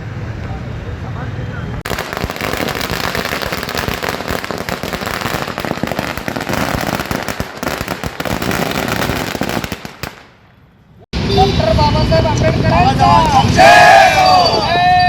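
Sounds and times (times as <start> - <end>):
firecrackers crackling: 1.8 - 10.6.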